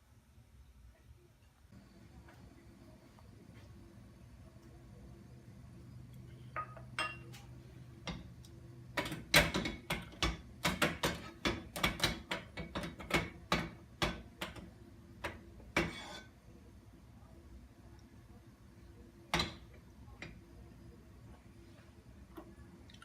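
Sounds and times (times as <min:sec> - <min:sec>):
utensil scraping frying pan: 0:15.7 - 0:16.4.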